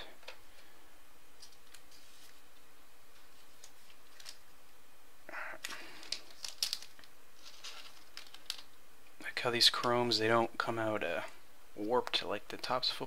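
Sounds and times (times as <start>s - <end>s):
card rustle: 1.4s - 4.5s, 5.6s - 8.7s.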